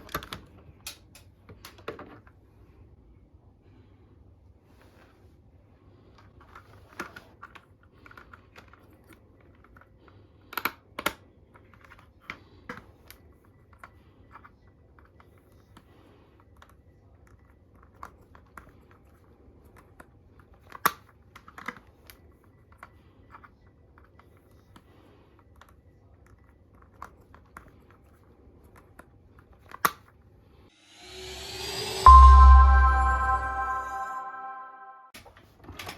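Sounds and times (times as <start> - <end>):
music: 30.8 - 35.1
rising sweep: 30.8 - 35.1.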